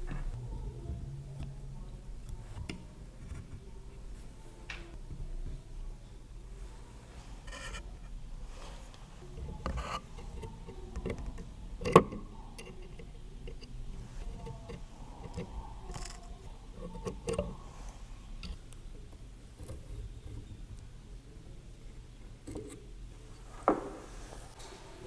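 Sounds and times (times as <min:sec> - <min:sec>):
wooden parts clicking and knocking: 0:09.4 - 0:17.6.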